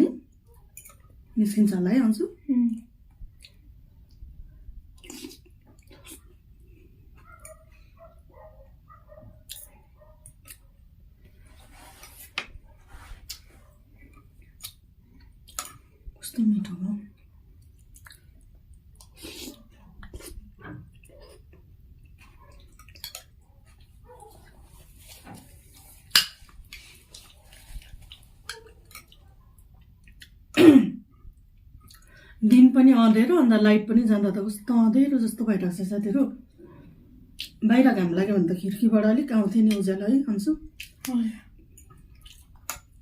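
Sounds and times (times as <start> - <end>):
quiet chewing: 0.3 - 1.3, 2.7 - 16.3, 17.1 - 32.4, 40.7 - 43.0
tableware clicking and tapping: 26.1 - 26.5.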